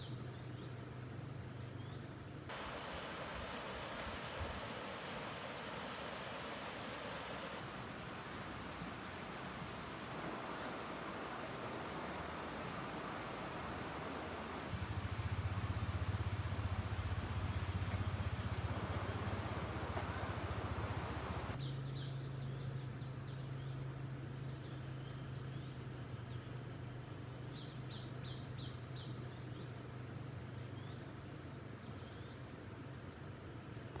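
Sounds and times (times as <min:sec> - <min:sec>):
short insect chirps: 0:00.0 - 0:22.1
insects trilling: 0:00.0 - 0:34.0.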